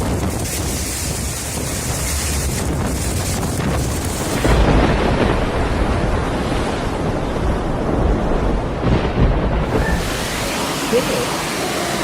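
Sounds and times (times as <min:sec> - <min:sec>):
wind buffeting microphone: 0:00.0 - 0:10.8
roar of wind-driven water: 0:00.0 - 0:12.0.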